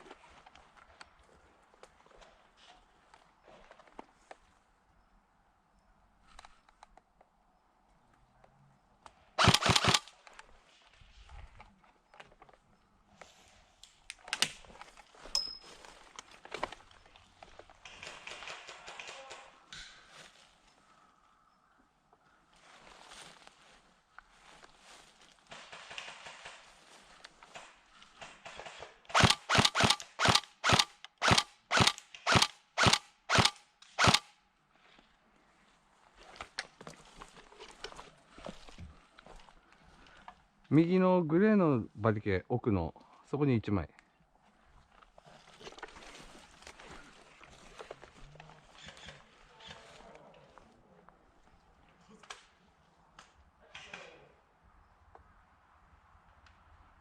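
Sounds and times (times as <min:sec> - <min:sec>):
airsoft gun shots: 0:09.4 - 0:10.0, 0:29.1 - 0:34.3.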